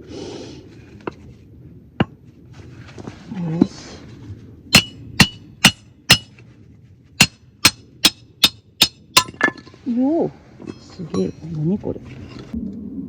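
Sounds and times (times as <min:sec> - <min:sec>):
hammer striking metal wedge: 0:04.7 - 0:06.3, 0:07.2 - 0:09.7.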